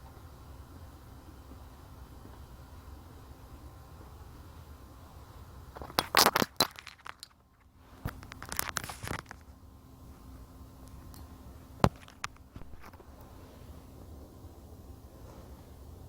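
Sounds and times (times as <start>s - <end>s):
faint steady hum: 0.0s - 16.0s
crinkly crackling clatter: 5.8s - 9.6s.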